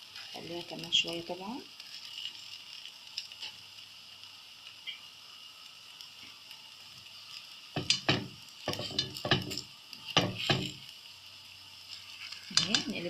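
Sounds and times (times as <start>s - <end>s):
batter sizzling in a pan: 0.0s - 13.0s
utensil scraping and knocking on pan: 7.8s - 10.8s, 12.5s - 13.0s.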